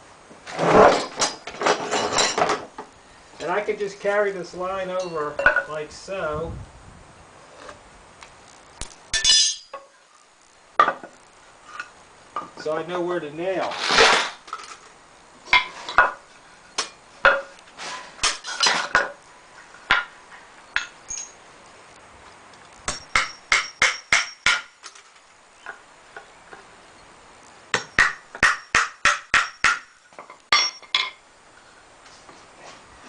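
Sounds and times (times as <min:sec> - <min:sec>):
hammer driving nails into wood: 0:27.7 - 0:29.9.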